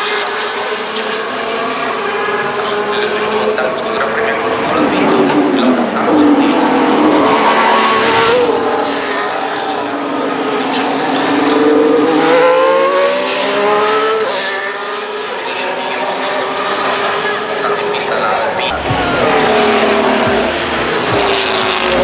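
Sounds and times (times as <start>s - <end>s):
racing car engines at speed: 0.0s - 22.0s.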